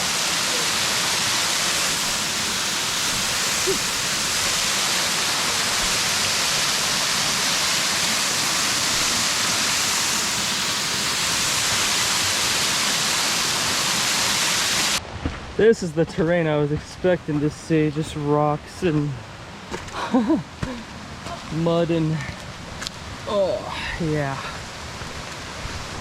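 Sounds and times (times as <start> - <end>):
flowing water rushing: 0.0 - 15.0.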